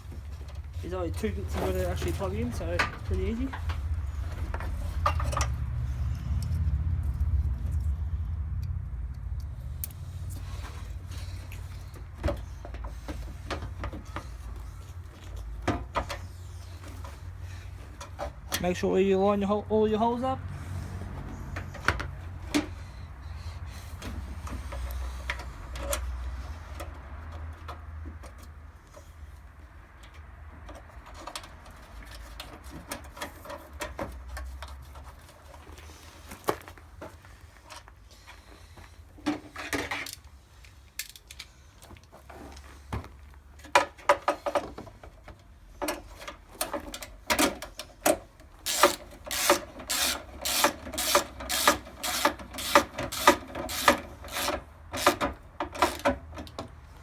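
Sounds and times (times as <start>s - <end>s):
clicks and knocks of fitting parts: 1.6s - 8.0s, 8.6s - 18.7s, 21.5s - 22.9s, 23.9s - 29.2s, 29.9s - 35.6s, 39.2s - 57.0s
ratchet spanner rasping: 48.6s - 56.1s.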